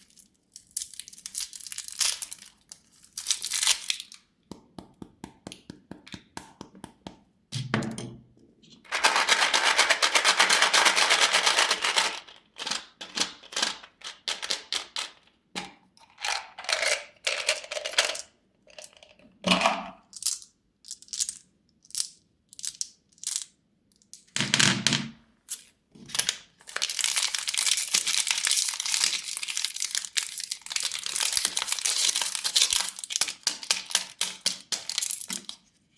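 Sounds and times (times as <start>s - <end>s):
candy wrappers crinkling: 0.0s - 4.3s, 25.5s - 35.7s.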